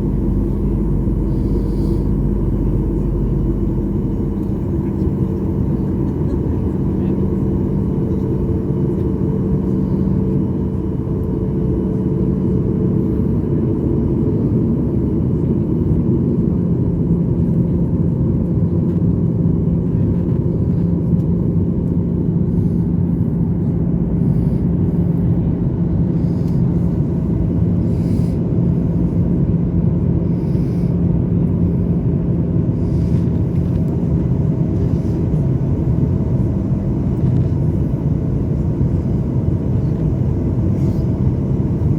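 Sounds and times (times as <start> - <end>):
jet engine cabin rumble: 0.0 - 41.9.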